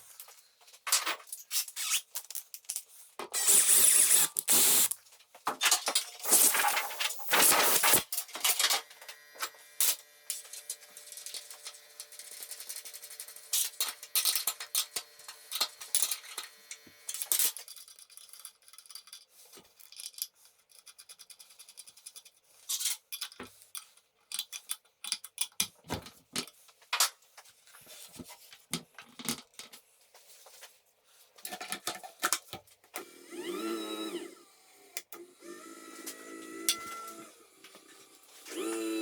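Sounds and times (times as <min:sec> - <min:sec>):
small electric motor whining: 0:03.4 - 0:05.0, 0:06.2 - 0:17.4, 0:33.0 - 0:39.0.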